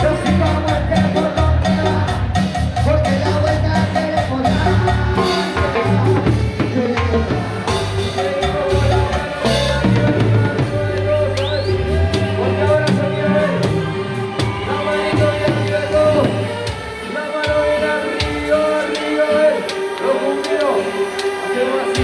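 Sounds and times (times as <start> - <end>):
low bass notes: 0.0 - 16.7
held instrument tones: 0.0 - 17.0
drum kit playing a beat: 0.0 - 21.4.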